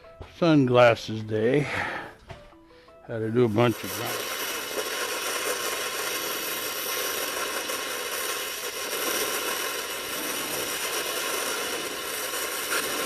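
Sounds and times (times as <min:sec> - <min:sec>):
metalworking tool hissing on steel: 0:03.4 - 0:13.0.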